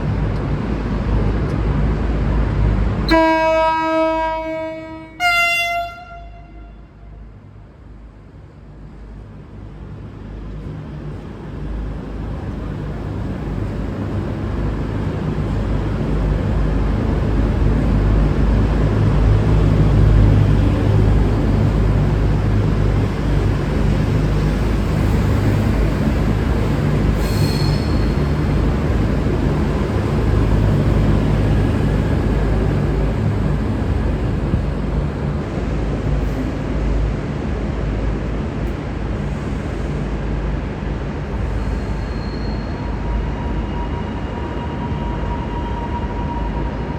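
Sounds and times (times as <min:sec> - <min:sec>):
diesel train engine hum: 0:00.0 - 0:46.9
high squeak: 0:27.2 - 0:28.3, 0:41.6 - 0:46.6.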